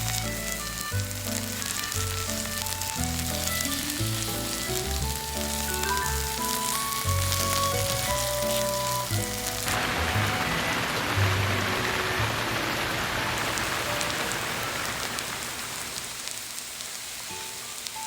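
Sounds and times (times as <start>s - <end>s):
melodic music with bass line: 0.0s - 10.6s
batter sizzling in oil: 0.0s - 18.0s.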